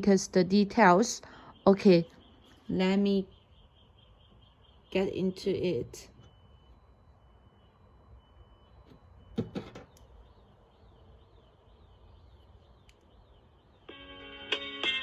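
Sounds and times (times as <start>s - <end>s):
faint low hum: 0.0s - 15.0s
sharp knocks: 9.4s - 9.9s.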